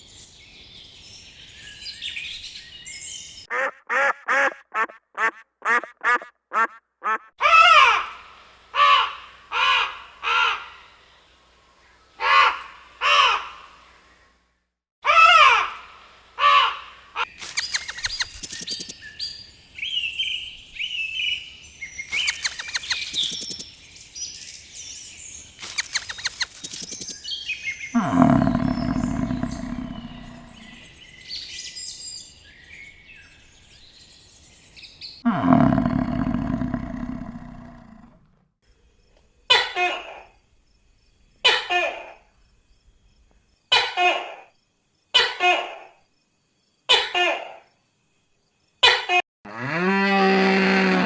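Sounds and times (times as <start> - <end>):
ducks quacking: 3.5 - 7.3
birds chirping: 17.2 - 38.2
rapid clicking: 17.4 - 19.0, 22.1 - 23.6, 25.6 - 27.2.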